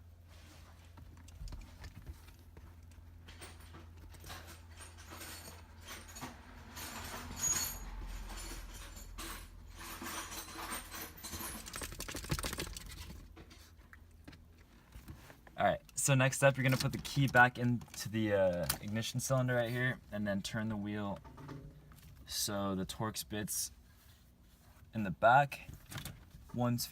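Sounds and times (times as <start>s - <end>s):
clicks and rattles of small parts: 1.1s - 15.0s, 16.6s - 19.0s.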